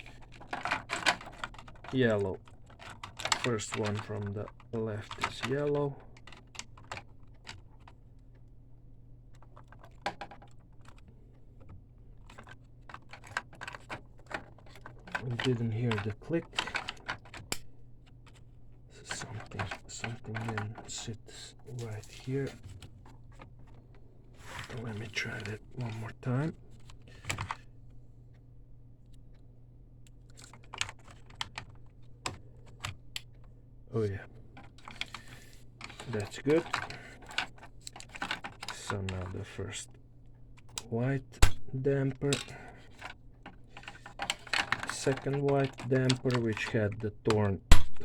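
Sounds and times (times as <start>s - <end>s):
faint low hum: 0.0s - 48.0s
damper snapping into place: 47.7s - 48.0s.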